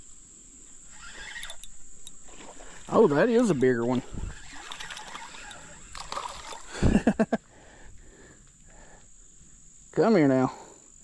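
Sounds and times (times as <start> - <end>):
insect trill: 0.0 - 11.0
fish splashing in water: 2.2 - 6.8.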